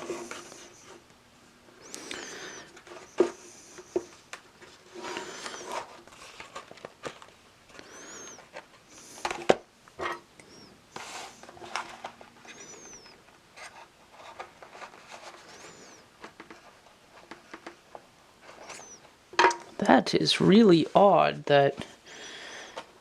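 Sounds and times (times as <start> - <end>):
cardboard rustling and scraping: 2.7 - 7.4, 11.0 - 19.0.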